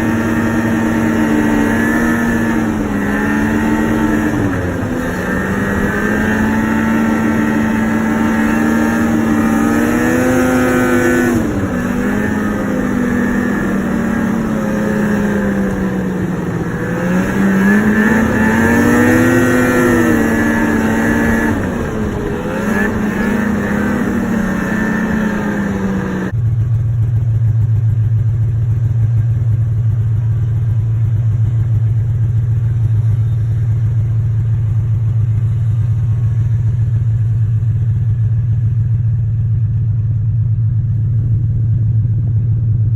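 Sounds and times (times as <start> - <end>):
snowmobile engine revving: 0.0 - 26.4
steady low drone: 0.0 - 42.9.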